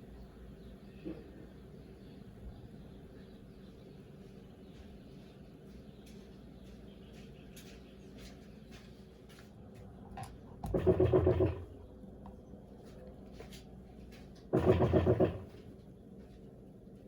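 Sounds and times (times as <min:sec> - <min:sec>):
faint machine hum: 0:00.0 - 0:17.0
washing machine agitation churning: 0:10.3 - 0:12.2, 0:14.4 - 0:15.7.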